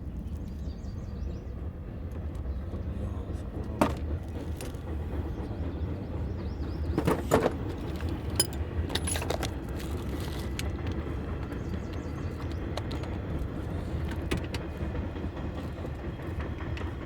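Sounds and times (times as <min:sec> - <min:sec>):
steady low rumble: 0:00.0 - 0:17.0
metallic clinks and knocks: 0:07.8 - 0:10.7.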